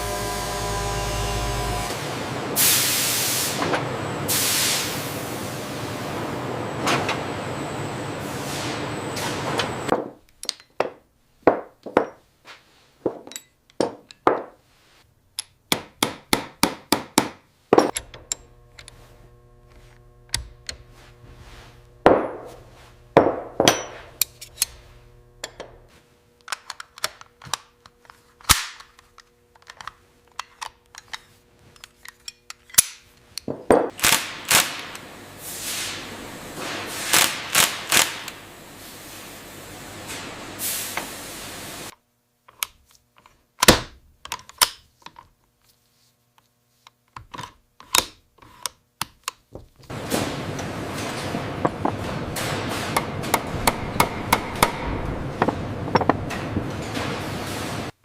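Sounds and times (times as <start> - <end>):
steady machine hum: 0.0 - 2.7, 17.9 - 26.4, 34.0 - 41.9, 49.9 - 58.0
sharp metallic clicks and knocks: 51.7 - 57.0.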